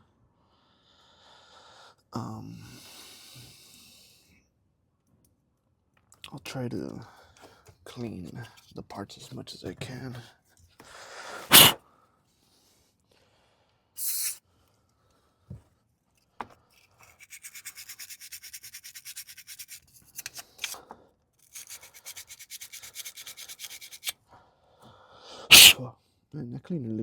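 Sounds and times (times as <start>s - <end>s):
spray cleaner hissing: 11.5s - 11.8s, 25.5s - 25.8s
brush scrubbing metal pins: 25.5s - 25.8s.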